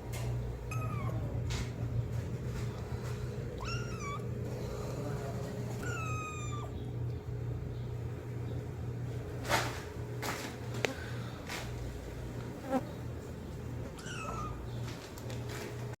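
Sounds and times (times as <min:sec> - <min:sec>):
steady low hum: 0:00.0 - 0:16.0
kitten meowing: 0:00.7 - 0:01.2, 0:03.6 - 0:04.2, 0:05.8 - 0:06.8, 0:14.0 - 0:14.6.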